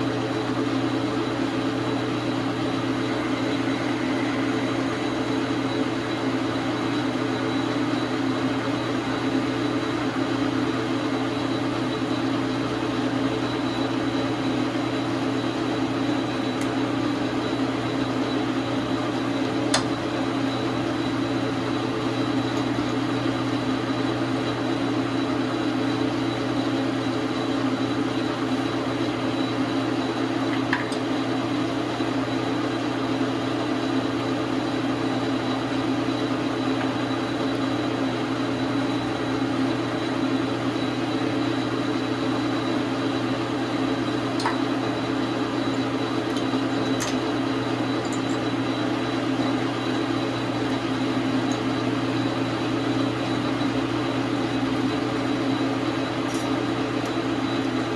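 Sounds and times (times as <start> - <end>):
lathe motor and gear hum: 0.0 - 57.9
thin high whine: 2.6 - 9.1.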